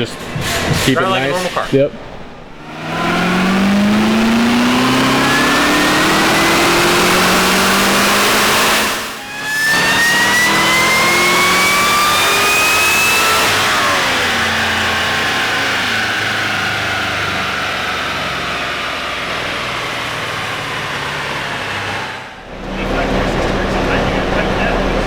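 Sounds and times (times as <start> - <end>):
high whine: 0.0 - 16.6, 22.1 - 25.0
car engine accelerating: 0.0 - 25.0.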